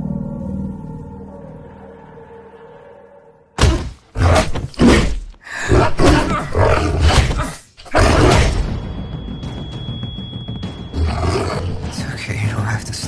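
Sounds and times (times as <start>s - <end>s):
creature growling roars: 3.6s - 8.5s.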